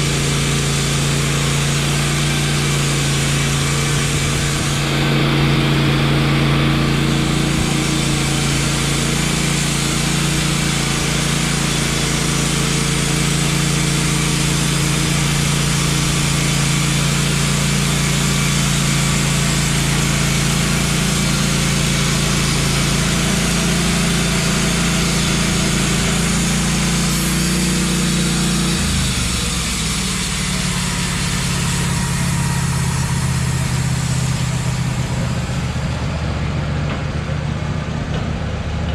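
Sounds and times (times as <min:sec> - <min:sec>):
bandsaw blade cutting log hiss: 0:00.0 - 0:36.3
sawmill engine running: 0:00.0 - 0:38.9.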